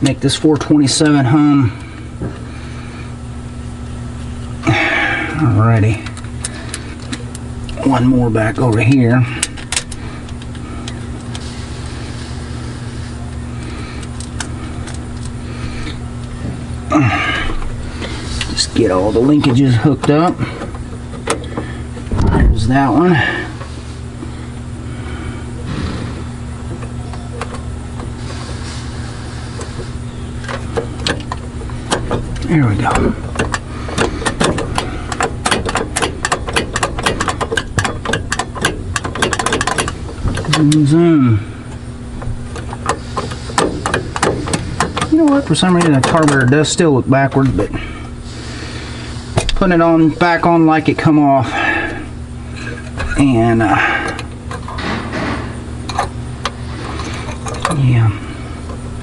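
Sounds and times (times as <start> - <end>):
low mechanical hum: 0.0 - 59.0
metallic clicking and tapping: 33.3 - 40.8.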